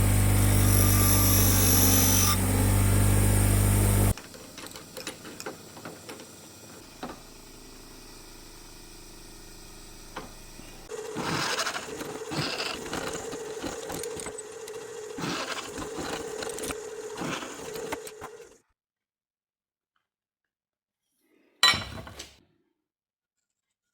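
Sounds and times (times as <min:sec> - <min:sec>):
power tool humming and clicking: 0:00.0 - 0:18.6.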